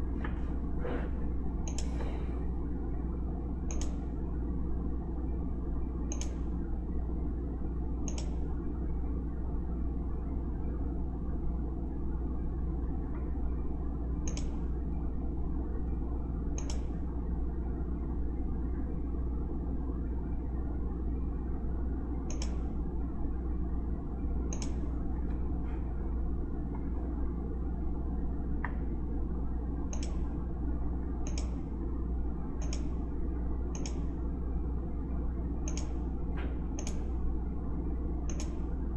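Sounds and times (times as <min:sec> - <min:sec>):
low room hum: 0:00.0 - 0:38.9
computer mouse clicking: 0:01.6 - 0:02.1, 0:03.7 - 0:04.0, 0:06.1 - 0:06.4, 0:08.0 - 0:08.4, 0:14.2 - 0:14.6, 0:16.6 - 0:16.9, 0:22.3 - 0:22.7, 0:24.5 - 0:24.8, 0:29.9 - 0:30.3, 0:31.2 - 0:31.6, 0:32.6 - 0:33.0, 0:33.7 - 0:34.1, 0:35.6 - 0:36.0, 0:36.8 - 0:37.1, 0:38.3 - 0:38.6.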